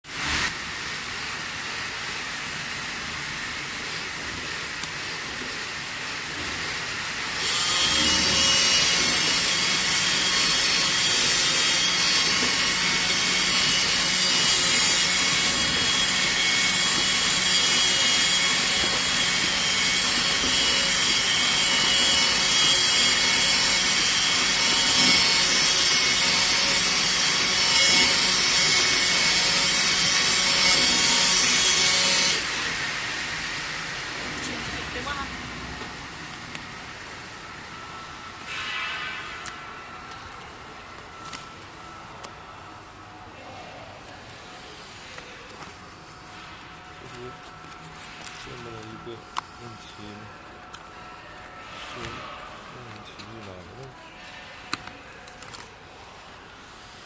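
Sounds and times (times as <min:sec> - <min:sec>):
cutting machine running: 0:07.2 - 0:35.9
steady whine: 0:32.3 - 0:54.1.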